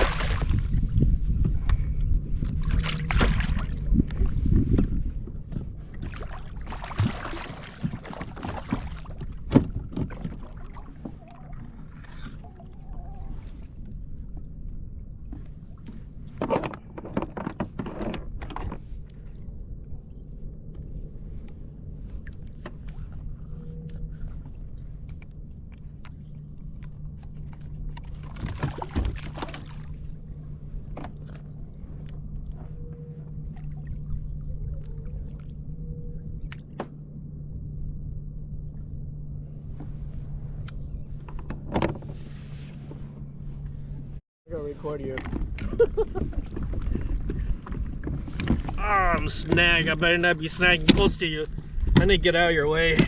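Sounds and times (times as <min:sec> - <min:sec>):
water splashes: 0:00.0 - 0:01.0, 0:02.4 - 0:04.3, 0:05.8 - 0:13.8, 0:27.4 - 0:30.2, 0:33.4 - 0:35.8
knocks and splashes on kayak: 0:00.0 - 0:13.8, 0:15.3 - 0:19.2, 0:27.2 - 0:32.7, 0:44.8 - 0:53.0
steady low rumble: 0:00.0 - 0:17.4, 0:18.1 - 0:53.0
steady low hum: 0:00.0 - 0:53.0.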